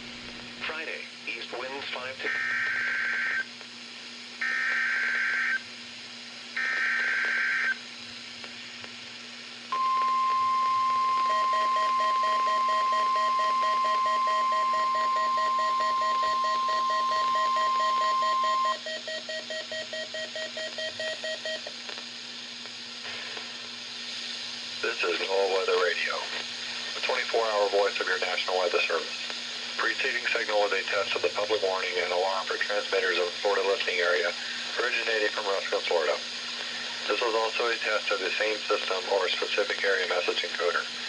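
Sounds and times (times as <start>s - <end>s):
steady alarm tone: 4.4s - 5.6s, 6.6s - 7.8s, 9.7s - 21.6s
rapidly pulsing low beep: 9.8s - 21.7s.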